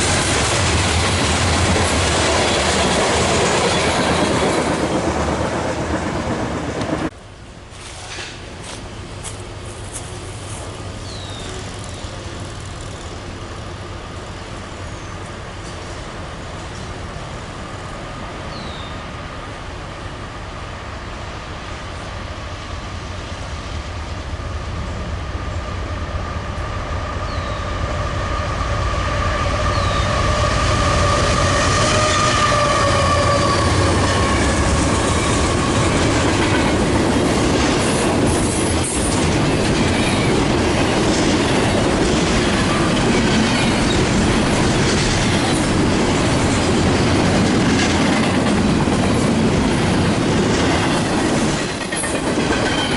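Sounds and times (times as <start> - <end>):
train wheels clickety-clack: 0.0 - 7.2, 7.8 - 13.2, 29.6 - 52.9
train rumble with whine: 0.0 - 52.9.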